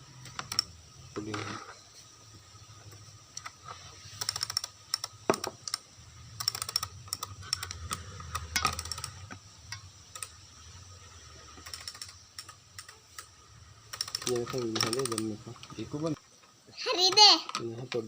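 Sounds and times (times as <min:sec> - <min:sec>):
computer keyboard typing: 0:06.4 - 0:09.2, 0:10.1 - 0:10.3, 0:11.6 - 0:13.3, 0:13.9 - 0:15.4.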